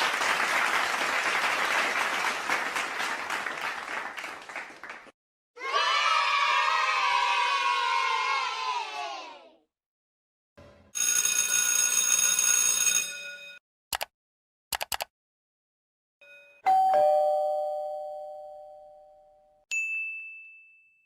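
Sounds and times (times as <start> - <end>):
short clicks: 13.9 - 14.1, 14.7 - 15.1
ding-dong doorbell chime: 16.2 - 21.0.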